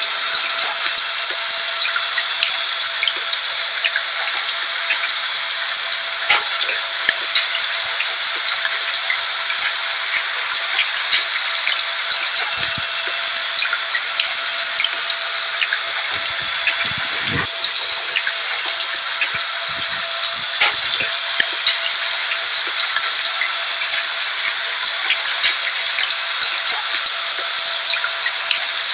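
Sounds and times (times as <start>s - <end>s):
drops ticking: 0.0s - 28.9s
vacuum cleaner running: 16.4s - 18.6s.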